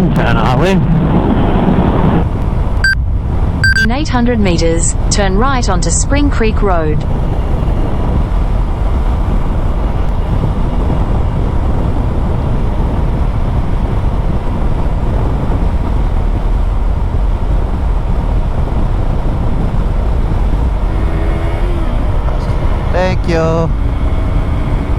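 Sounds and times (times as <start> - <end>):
wind and road noise: 0.0 - 24.9
motorcycle engine: 15.7 - 24.9.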